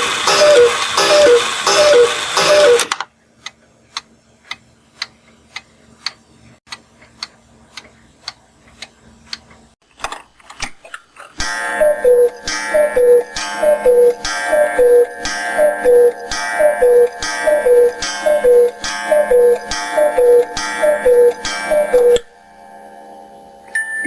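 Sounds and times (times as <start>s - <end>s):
musical clock falling tone: 11.4s - 24.0s
clock ticking: 11.8s - 22.3s.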